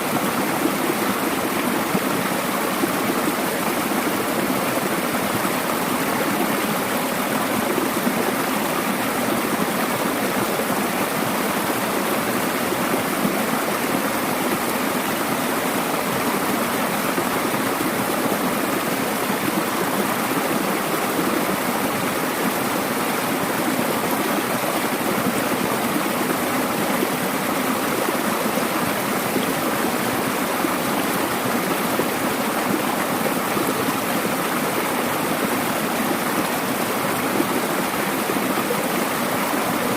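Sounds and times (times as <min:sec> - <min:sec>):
stream rushing over rocks: 0:00.0 - 0:39.9.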